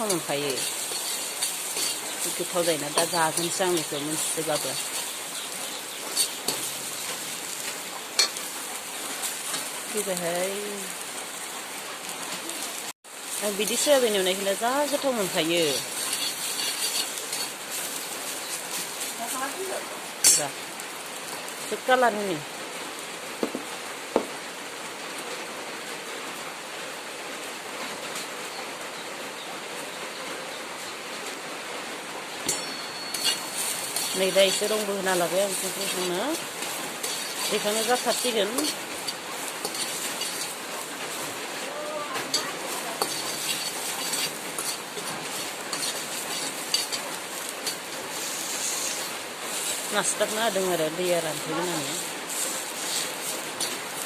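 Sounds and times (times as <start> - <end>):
utensil scraping a pan: 0.0 - 8.6, 13.6 - 19.4, 32.5 - 41.4, 42.2 - 54.0
food sizzling in hot oil: 0.0 - 24.6, 32.4 - 54.0
utensil clicking against pan: 35.5 - 40.9, 42.3 - 49.8.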